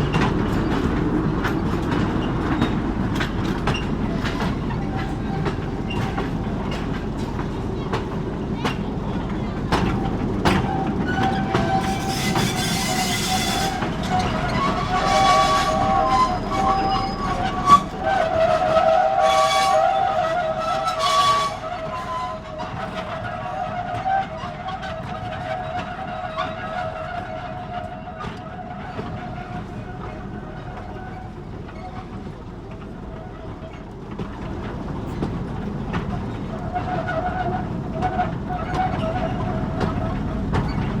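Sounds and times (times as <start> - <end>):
low train rumble: 0.0 - 41.0
train wheels squealing on rails: 0.0 - 41.0.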